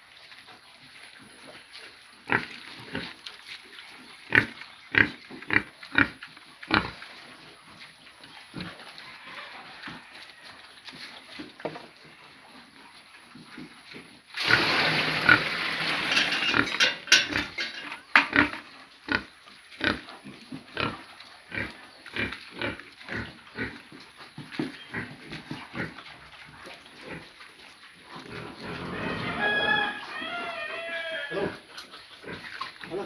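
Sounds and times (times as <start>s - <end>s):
pigs grunting: 1.6s - 3.3s, 4.2s - 7.5s, 14.4s - 33.0s
pigs squealing: 27.0s - 33.0s.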